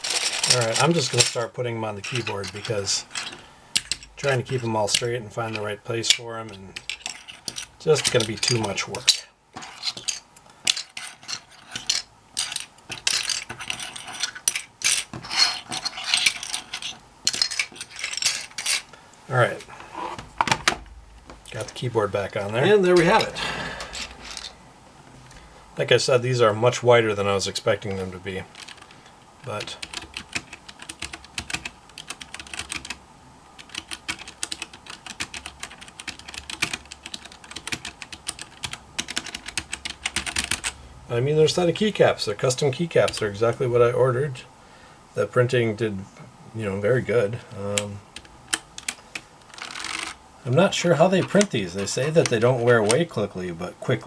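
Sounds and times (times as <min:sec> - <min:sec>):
mechanical keyboard typing: 0:29.8 - 0:33.0, 0:33.6 - 0:40.7.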